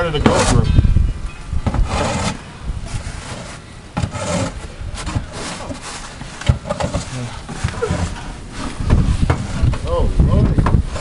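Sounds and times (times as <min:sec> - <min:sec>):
wind rumble on microphone: 0:00.0 - 0:03.6, 0:04.5 - 0:11.0
shovel scraping snow: 0:01.8 - 0:09.7.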